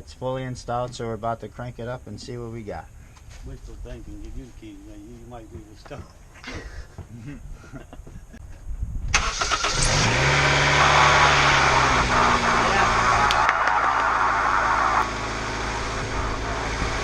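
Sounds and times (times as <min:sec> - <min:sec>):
car engine starting and revving: 0:09.1 - 0:17.0.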